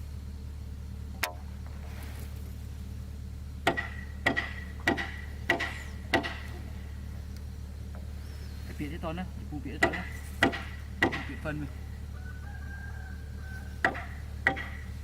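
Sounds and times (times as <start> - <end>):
low hum: 0.0 - 15.0
hammer striking metal: 3.7 - 6.6, 9.8 - 11.5, 13.8 - 14.9.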